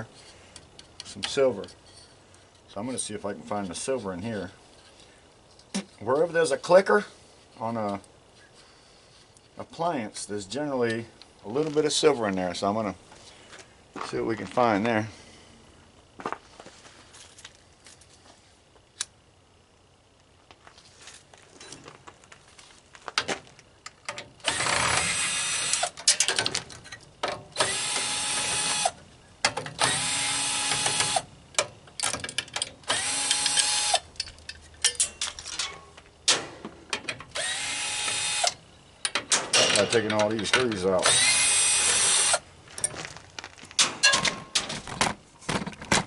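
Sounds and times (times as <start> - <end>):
power drill driving screws: 24.4 - 25.9, 27.6 - 29.0, 29.8 - 31.3, 32.9 - 34.0, 37.3 - 38.6, 41.0 - 42.4
handling clicks and clatter: 25.8 - 27.5, 39.0 - 41.0.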